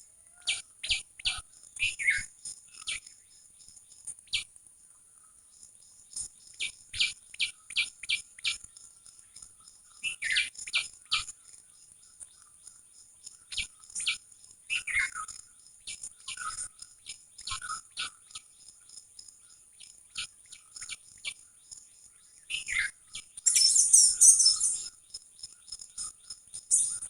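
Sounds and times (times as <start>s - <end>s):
birds chirping: 23.4s - 24.9s, 26.7s - 27.0s.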